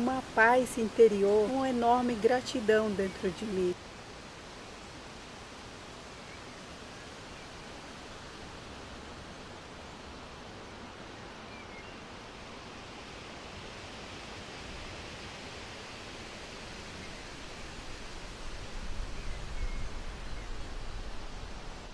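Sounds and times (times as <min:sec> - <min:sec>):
wind rushing through trees: 0:00.0 - 0:21.9
wind buffeting microphone: 0:16.8 - 0:21.9.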